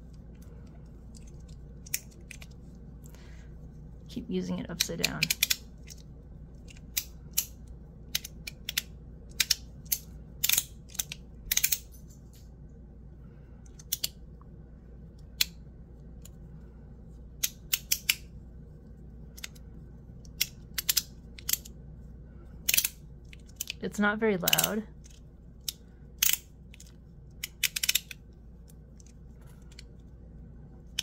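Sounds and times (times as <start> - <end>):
metal fidget toy clicking: 4.7 - 6.0, 6.6 - 12.0, 13.7 - 14.2, 17.4 - 18.2, 20.2 - 21.7, 24.4 - 28.2.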